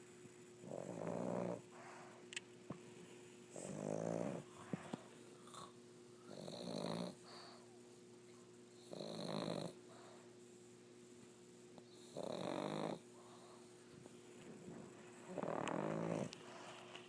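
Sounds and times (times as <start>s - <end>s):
dog snoring: 0.6s - 2.0s, 3.5s - 4.6s, 5.4s - 5.7s, 6.3s - 7.6s, 8.8s - 9.8s, 11.9s - 13.5s, 15.3s - 16.6s.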